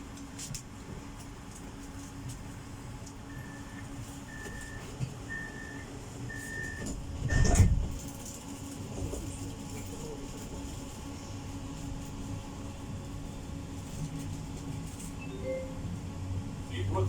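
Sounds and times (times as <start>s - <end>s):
tram interior hum: 0.0s - 17.0s
tram doors shutting thump: 6.8s - 8.0s
short high warning beeps: 15.2s - 15.8s.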